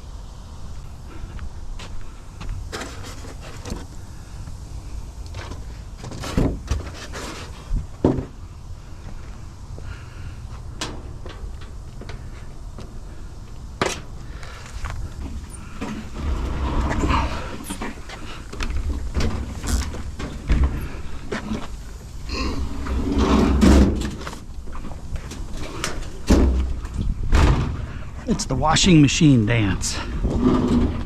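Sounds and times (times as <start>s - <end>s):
metal scrap scraping and rumbling: 15.2s - 21.7s, 22.3s - 24.4s, 29.9s - 31.0s
metal scrap knocks and thumps: 22.6s - 24.4s.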